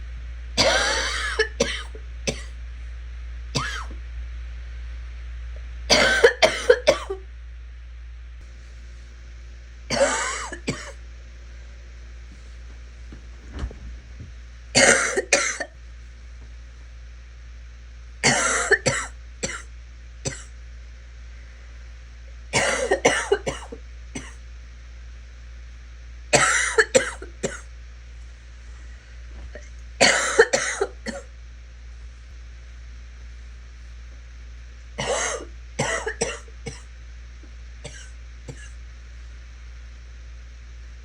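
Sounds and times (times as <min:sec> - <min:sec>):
person coughing: 0:00.6 - 0:02.5, 0:03.6 - 0:04.0, 0:05.9 - 0:07.2, 0:09.9 - 0:11.0, 0:14.8 - 0:15.7, 0:18.2 - 0:19.7, 0:22.6 - 0:24.4, 0:26.4 - 0:27.7, 0:29.5 - 0:31.3, 0:35.0 - 0:36.9, 0:37.9 - 0:38.8.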